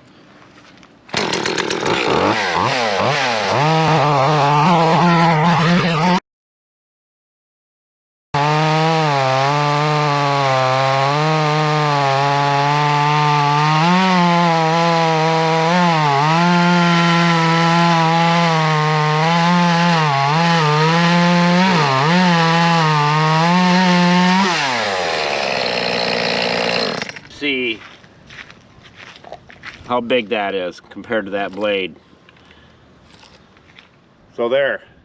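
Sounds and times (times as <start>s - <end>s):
chainsaw cutting through log: 1.1s - 6.2s, 8.4s - 27.3s.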